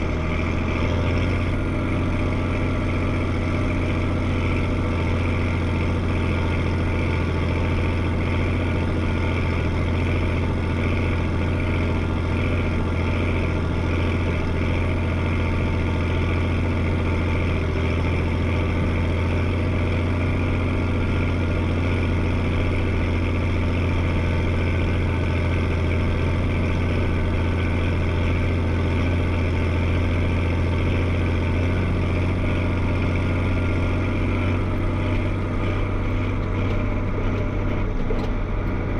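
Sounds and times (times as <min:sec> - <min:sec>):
diesel engine droning: 0:00.0 - 0:38.9.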